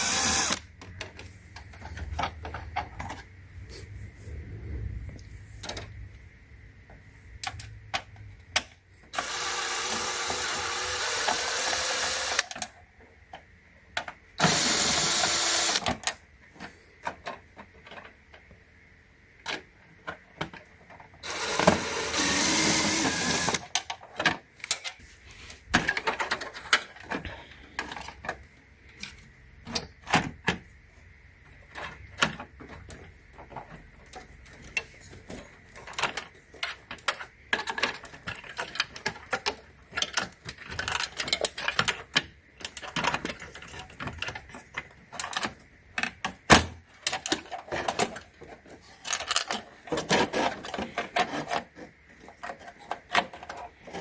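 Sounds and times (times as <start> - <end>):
electric screwdriver running: 0.0 - 0.6, 9.2 - 12.5, 14.4 - 15.8, 21.2 - 23.6.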